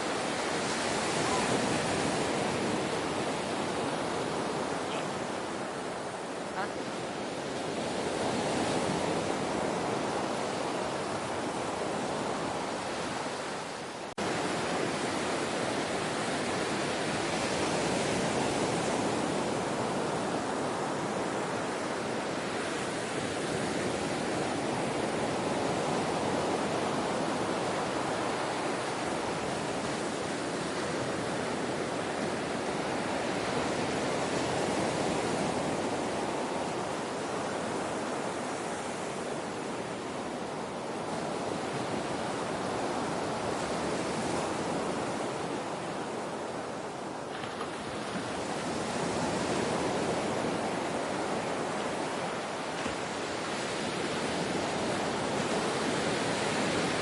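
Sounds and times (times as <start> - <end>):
ocean waves: 0.0 - 57.0.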